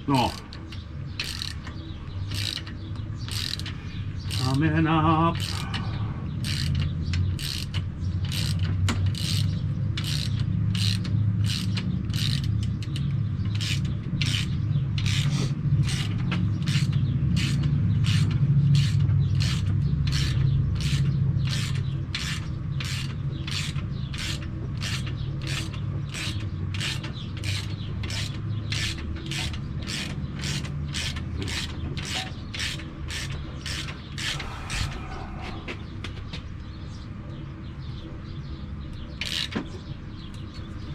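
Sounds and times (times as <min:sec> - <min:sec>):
steady low hum: 0:00.0 - 0:39.2
ratchet clicks: 0:00.1 - 0:35.1, 0:38.9 - 0:40.8.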